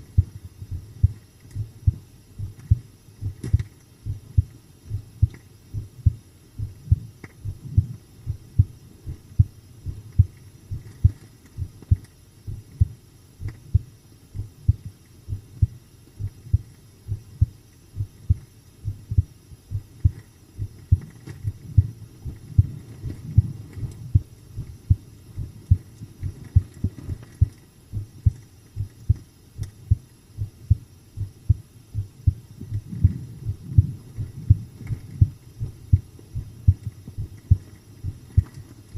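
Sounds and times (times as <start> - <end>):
heartbeat thumps: 0.0 - 38.9.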